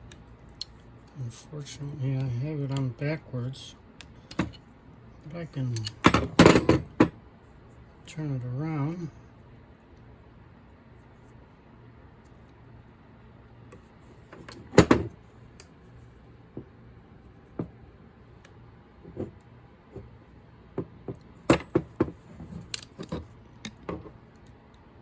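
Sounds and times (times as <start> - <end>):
clicks and knocks of small parts: 4.0 - 4.6, 5.6 - 7.1, 21.2 - 24.8.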